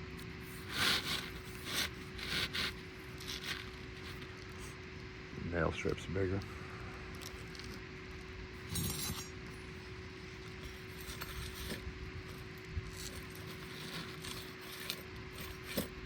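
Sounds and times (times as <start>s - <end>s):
faint steady hum: 0.0s - 16.0s
shingles scraping and clinking: 0.5s - 4.6s, 10.4s - 16.0s.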